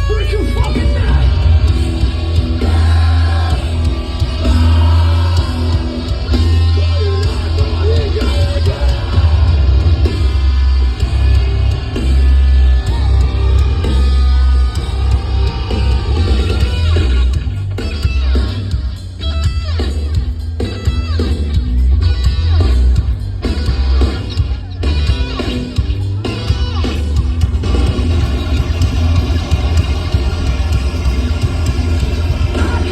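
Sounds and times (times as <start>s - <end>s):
drums: 0.0s - 32.9s
electric guitars: 0.0s - 32.9s
heavy bass: 0.0s - 32.9s.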